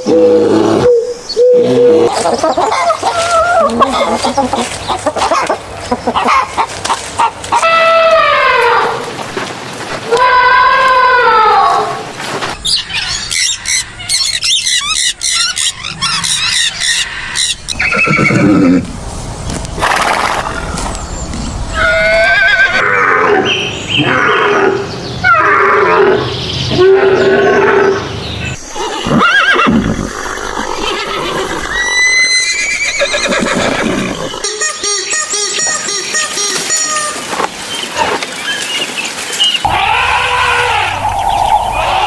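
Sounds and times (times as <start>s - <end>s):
horse whinnying: 17.7s - 18.8s, 28.6s - 34.5s
animal calls: 21.8s - 37.2s, 39.6s - 42.0s.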